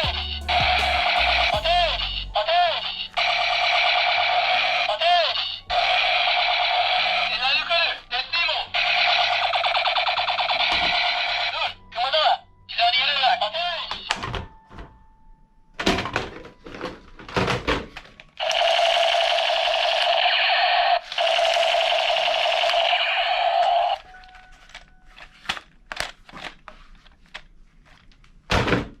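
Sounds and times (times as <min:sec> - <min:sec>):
toy gun buzzing rattle: 0:18.4 - 0:24.0.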